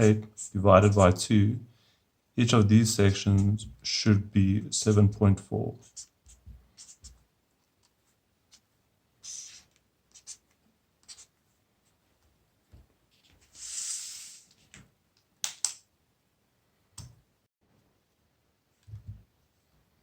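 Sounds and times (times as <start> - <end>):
scratches on work surface: 9.2 - 10.4.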